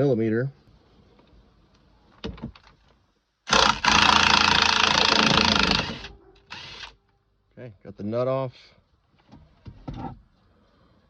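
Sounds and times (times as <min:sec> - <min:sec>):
power tool running: 0:03.5 - 0:06.9.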